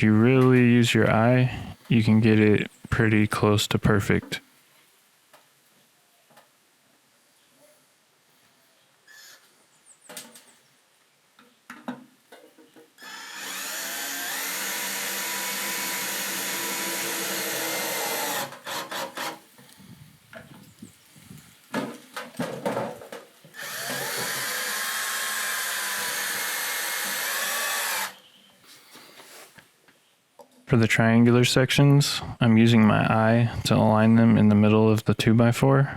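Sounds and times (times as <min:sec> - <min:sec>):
cordless drill driving screws: 0:13.0 - 0:19.4, 0:23.5 - 0:28.2.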